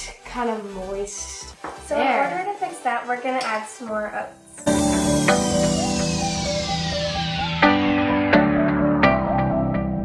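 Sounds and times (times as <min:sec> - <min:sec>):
sustained backing music: 0:00.0 - 0:10.0
plucked guitar-like notes: 0:04.6 - 0:09.5.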